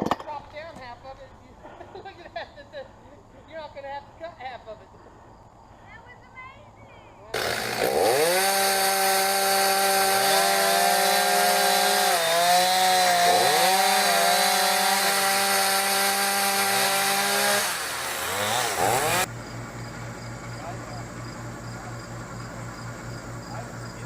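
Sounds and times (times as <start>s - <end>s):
chainsaw cutting wood: 7.3s - 19.3s.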